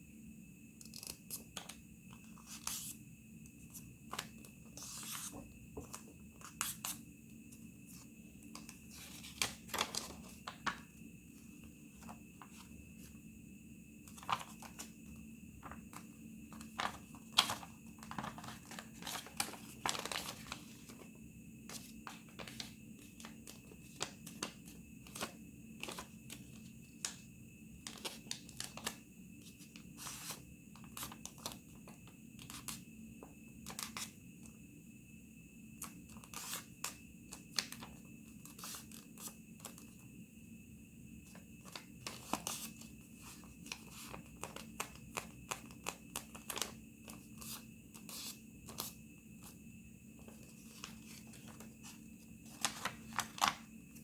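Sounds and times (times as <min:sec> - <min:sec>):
faint steady hum: 0:00.0 - 0:54.0
paper rustling and crinkling: 0:04.1 - 0:06.9, 0:07.9 - 0:10.9, 0:14.1 - 0:15.0, 0:15.6 - 0:21.1, 0:21.7 - 0:27.2, 0:41.3 - 0:49.6, 0:50.2 - 0:54.0.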